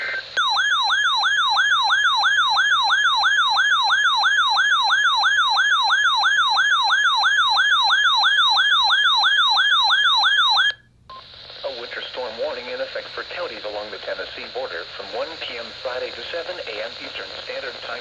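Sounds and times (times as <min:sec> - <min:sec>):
warbling weather alert siren: 0:00.4 - 0:10.8.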